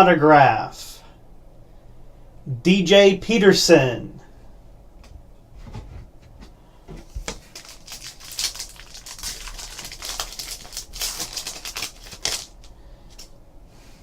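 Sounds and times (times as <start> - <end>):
wrapper rustling and crinkling: 7.0 - 13.3.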